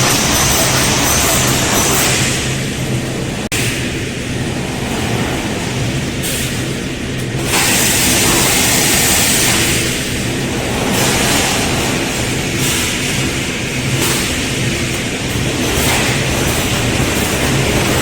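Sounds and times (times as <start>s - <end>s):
welding machine humming: 0.0s - 2.7s
loud machine hiss: 0.0s - 2.9s.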